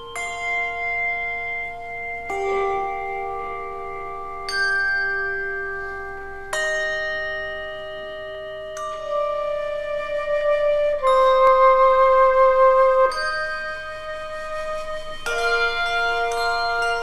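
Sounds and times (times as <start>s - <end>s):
handbell chords ringing: 0.0s - 9.6s, 13.1s - 17.0s.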